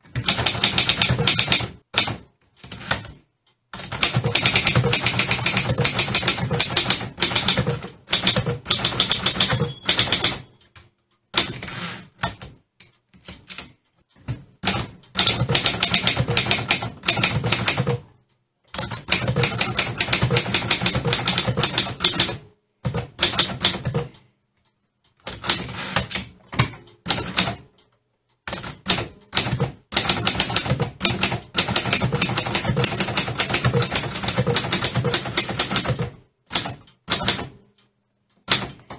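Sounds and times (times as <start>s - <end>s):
typewriter key strikes: 3.8s - 10.6s, 14.3s - 18.0s, 18.7s - 24.2s, 28.4s - 37.6s, 38.5s - 38.9s
typewriter bell ring: 8.1s - 10.6s.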